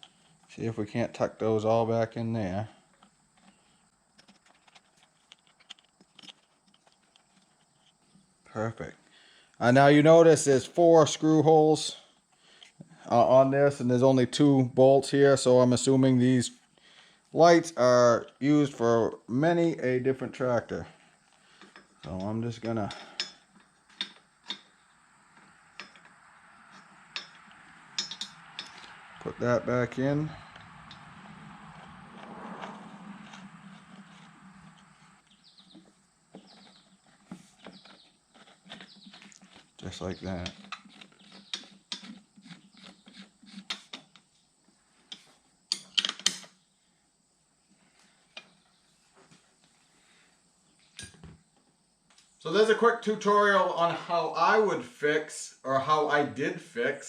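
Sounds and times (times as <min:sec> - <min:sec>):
tools and parts clicking: 0:04.2 - 0:07.9, 0:21.6 - 0:24.8, 0:25.4 - 0:26.1, 0:26.7 - 0:29.0, 0:45.1 - 0:46.6, 0:50.9 - 0:51.3
metallic clicks of small parts: 0:27.1 - 0:28.9, 0:45.1 - 0:46.5.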